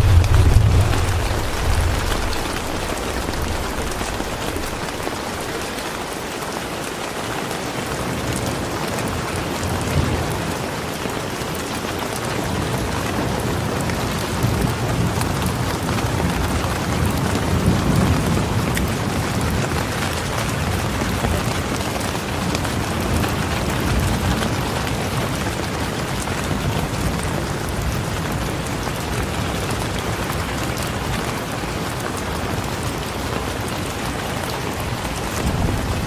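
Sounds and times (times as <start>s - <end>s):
thunder rolling: 0.0s - 6.2s, 34.7s - 36.0s
steady rain falling: 0.0s - 36.0s.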